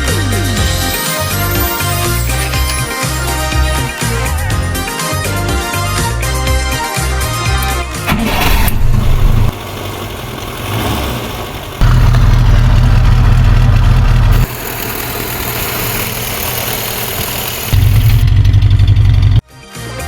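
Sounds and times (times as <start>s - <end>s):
car engine running: 7.9s - 19.4s.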